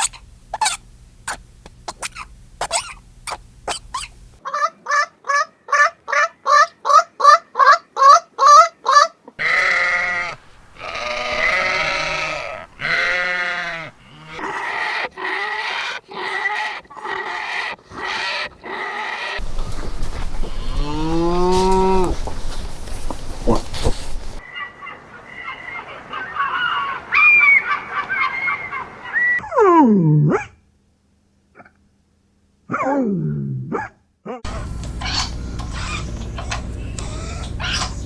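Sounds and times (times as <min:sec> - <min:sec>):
short animal calls: 0:00.0 - 0:04.3, 0:09.4 - 0:24.4, 0:34.5 - 0:38.0
goats bleating: 0:09.4 - 0:15.1, 0:19.4 - 0:24.4, 0:34.5 - 0:38.0.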